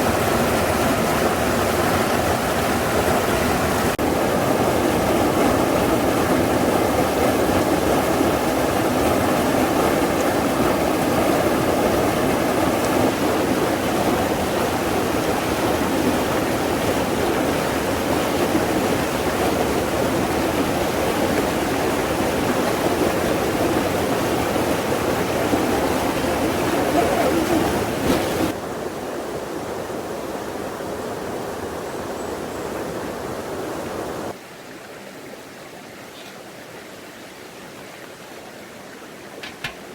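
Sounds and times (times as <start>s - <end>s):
stream rushing over rocks: 0.0s - 39.9s.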